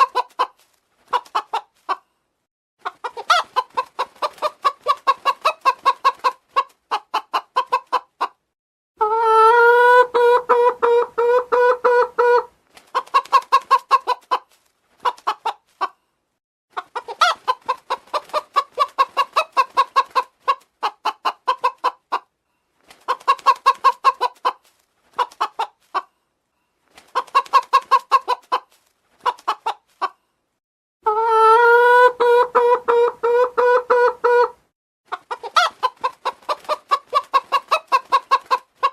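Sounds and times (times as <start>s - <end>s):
chicken clucking: 0.0s - 2.2s, 2.8s - 16.1s, 16.7s - 26.3s, 26.9s - 30.3s, 31.0s - 38.9s
chicken long drawn-out calls: 9.0s - 14.4s, 31.0s - 38.9s.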